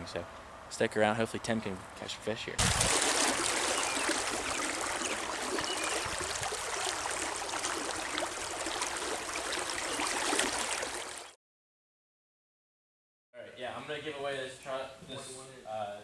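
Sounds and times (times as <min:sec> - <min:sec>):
creek water flowing: 0:02.6 - 0:11.4.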